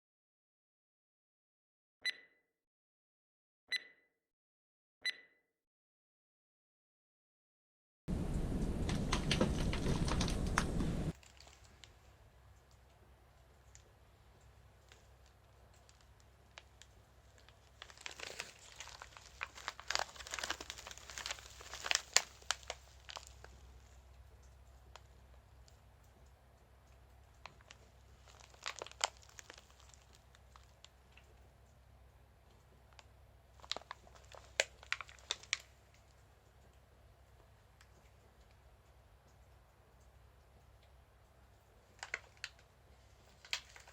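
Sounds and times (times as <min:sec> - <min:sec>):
packaging crinkling: 0:08.1 - 0:12.0, 0:14.8 - 0:23.9, 0:27.4 - 0:31.3, 0:33.6 - 0:35.8, 0:41.9 - 0:43.9
sharp clicks: 0:08.2 - 0:11.2.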